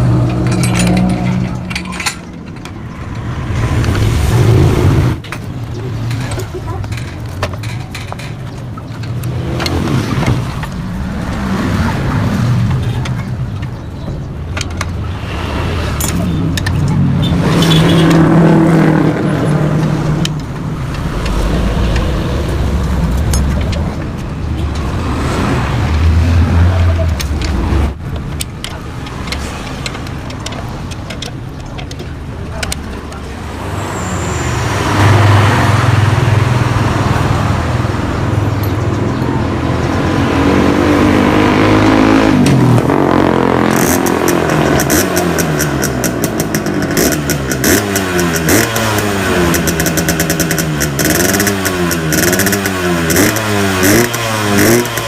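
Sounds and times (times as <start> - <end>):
two-stroke motorcycle engine revving: 39.4 - 55.0.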